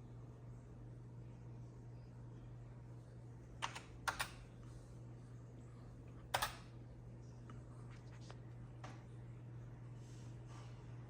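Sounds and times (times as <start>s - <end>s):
steady low hum: 0.0s - 11.0s
computer keyboard key presses: 3.6s - 4.4s, 6.3s - 6.6s.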